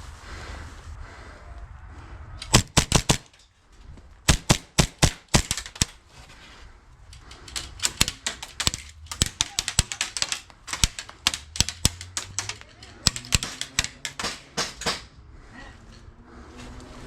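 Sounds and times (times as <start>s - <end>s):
airsoft pistols firing: 2.4s - 3.4s, 4.3s - 6.0s, 7.3s - 15.1s.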